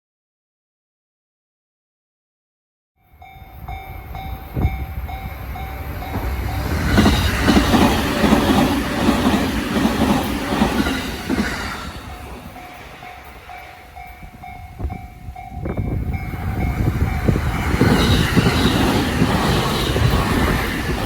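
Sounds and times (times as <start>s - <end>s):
electric train passing with rumble: 3.0s - 21.0s
level-crossing warning bell ringing: 3.0s - 21.0s
train wheels clattering over rail joints: 6.0s - 15.0s.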